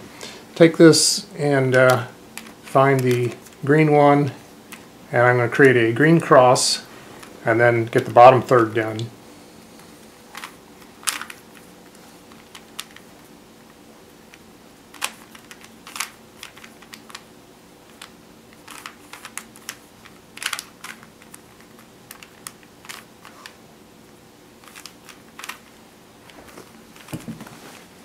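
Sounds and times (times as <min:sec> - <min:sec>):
puzzle cube plastic clicks: 0:10.3 - 0:11.7, 0:12.3 - 0:13.1, 0:14.3 - 0:17.3, 0:17.9 - 0:23.6, 0:24.6 - 0:25.7.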